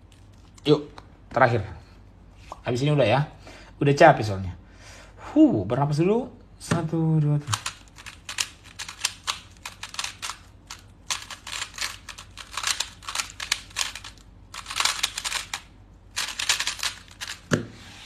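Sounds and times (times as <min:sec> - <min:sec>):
puzzle cube plastic clicks: 0:07.4 - 0:17.5.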